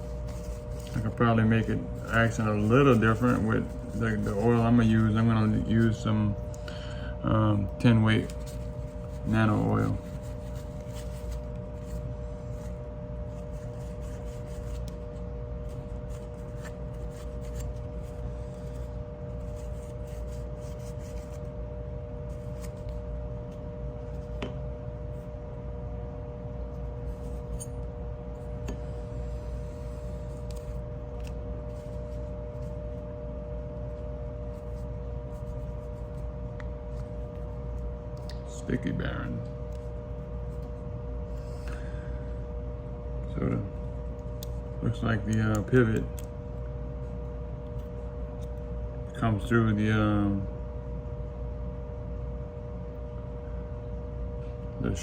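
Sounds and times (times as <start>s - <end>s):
soft rubbing of knife parts: 0.0s - 6.3s, 7.8s - 21.5s
steady background hum: 0.0s - 55.0s.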